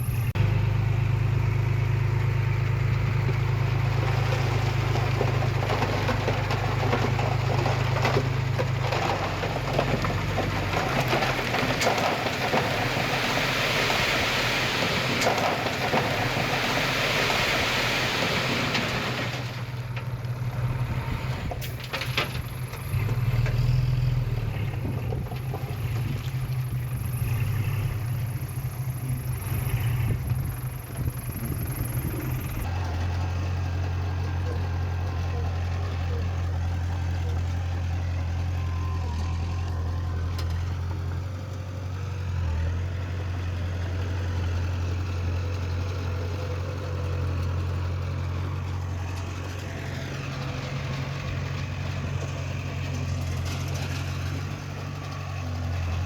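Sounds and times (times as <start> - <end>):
heavy machinery diesel engines: 0.0 - 56.0.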